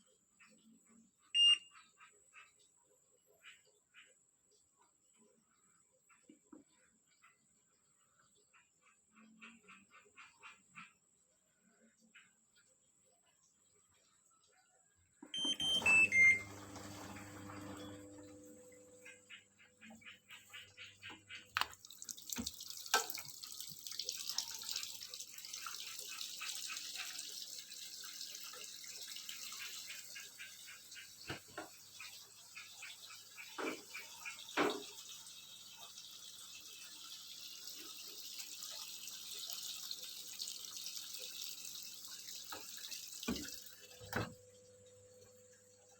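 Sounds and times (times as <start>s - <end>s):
water filling washing machine: 15.4s - 19.4s, 20.0s - 45.9s.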